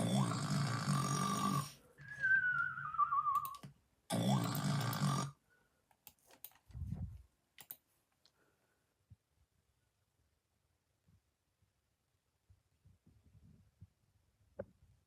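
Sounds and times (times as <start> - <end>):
rattling snore: 0.0 - 1.8, 4.1 - 5.4.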